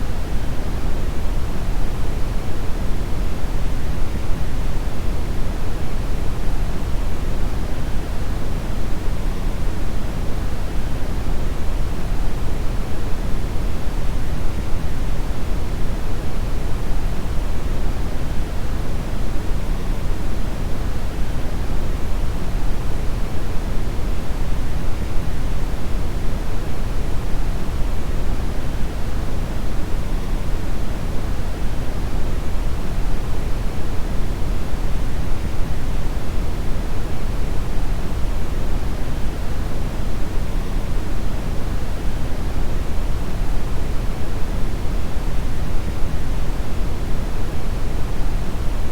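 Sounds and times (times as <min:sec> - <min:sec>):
brown noise hiss: 0:00.0 - 0:48.9.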